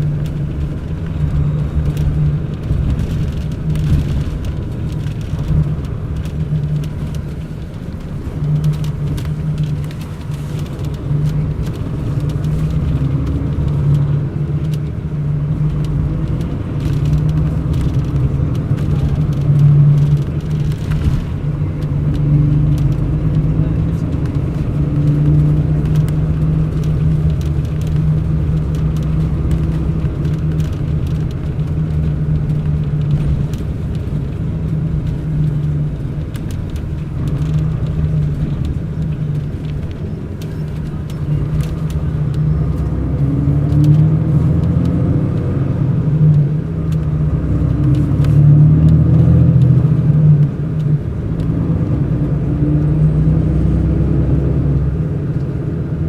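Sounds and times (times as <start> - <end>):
faint clicks and rattles: 0.0 - 42.9
bus diesel engine drone: 0.0 - 56.0.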